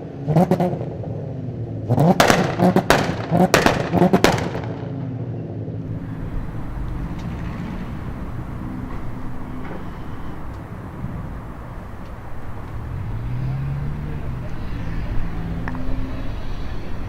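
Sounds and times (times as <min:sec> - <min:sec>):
car engine revving: 0:00.0 - 0:17.0
exhaust pops and bangs: 0:01.9 - 0:05.2, 0:05.9 - 0:13.5.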